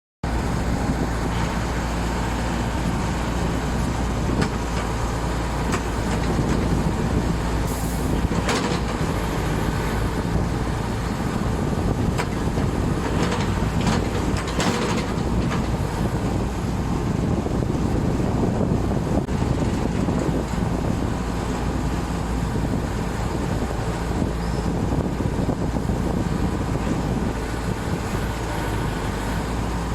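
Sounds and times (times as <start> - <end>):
sharp knocks and clanks: 5.7 - 6.8, 8.2 - 9.4, 12.1 - 16.0.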